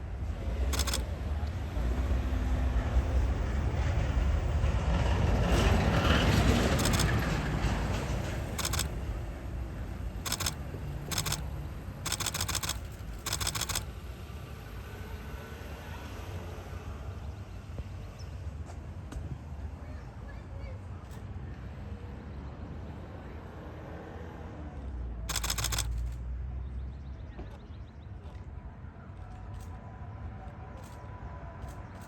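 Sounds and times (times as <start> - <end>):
camera shutters firing: 0.8 - 1.0, 6.7 - 7.2, 8.6 - 9.0, 10.3 - 11.4, 12.1 - 13.8, 25.3 - 26.2.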